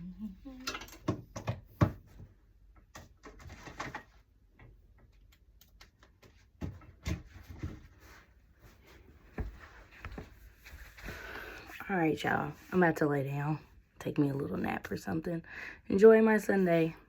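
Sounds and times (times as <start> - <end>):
soft handling knocks and rustles: 6.2 - 11.2.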